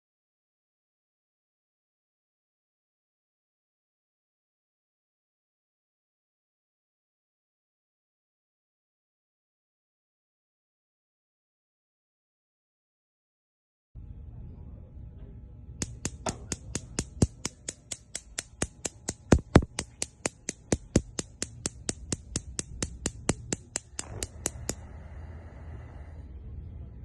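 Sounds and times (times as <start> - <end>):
gas burner igniters clicking: 15.8 - 25.0.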